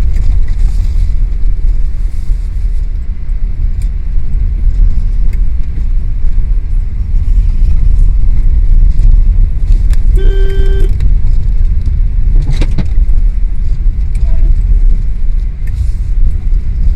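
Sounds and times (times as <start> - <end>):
deep rumble: 0.0 - 16.9
short horn toot: 10.2 - 11.0.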